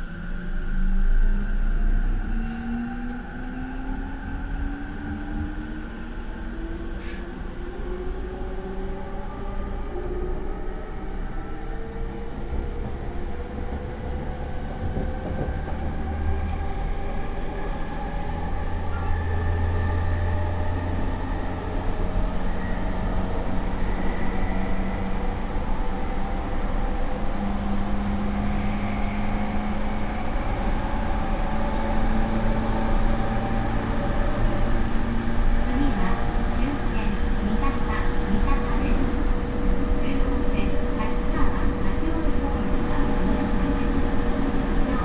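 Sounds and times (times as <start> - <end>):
train car rumble: 11.9 - 45.0.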